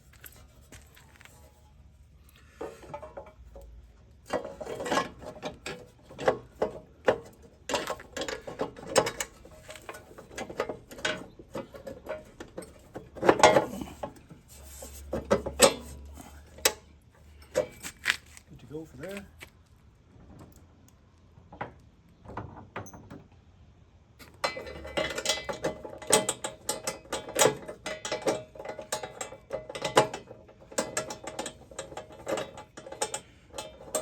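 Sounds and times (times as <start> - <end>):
metallic clanks of tools: 2.6 - 14.4, 15.1 - 18.2, 24.2 - 34.0.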